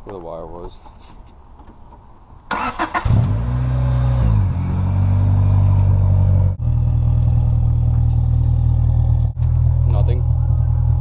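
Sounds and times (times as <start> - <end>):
car engine idling: 5.2 - 11.0.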